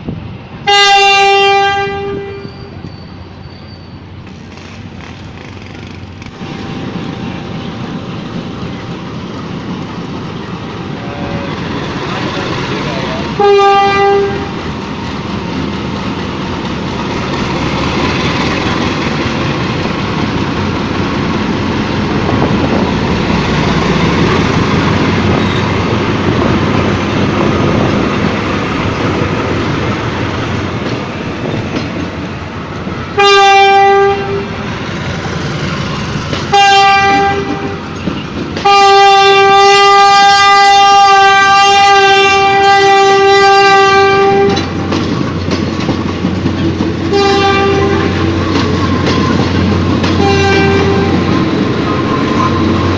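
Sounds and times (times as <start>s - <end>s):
train clattering along rails: 0.0s - 52.9s
train horn blasts: 0.6s - 2.8s, 13.3s - 14.6s, 33.2s - 34.6s, 36.5s - 44.8s, 47.1s - 48.4s, 50.2s - 51.4s.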